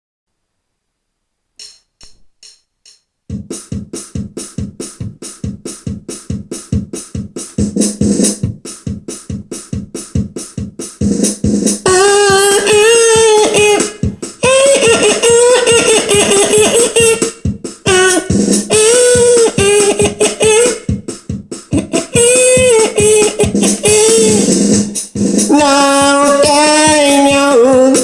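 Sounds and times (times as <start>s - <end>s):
drum machine beat: 1.6s - 28.0s
person singing: 11.8s - 17.3s, 17.9s - 20.9s, 21.7s - 28.0s.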